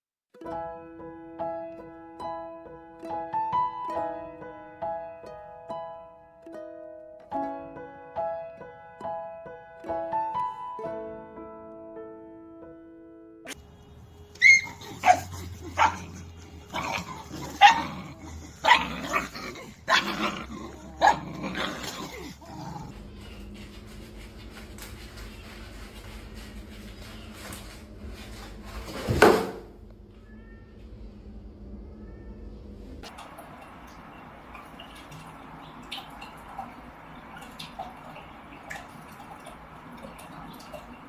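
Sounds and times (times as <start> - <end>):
steady low hum: 29.6 - 39.4.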